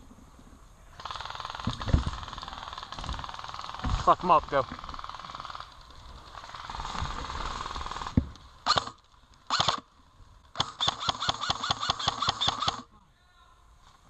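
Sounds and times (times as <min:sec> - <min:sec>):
airsoft gun full auto bursts: 0:01.0 - 0:09.9, 0:10.5 - 0:12.9.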